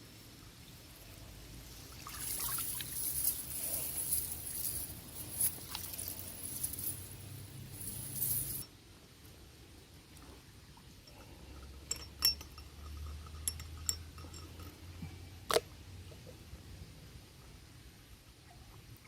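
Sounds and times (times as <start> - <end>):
water splashing and trickling: 1.1 - 8.6.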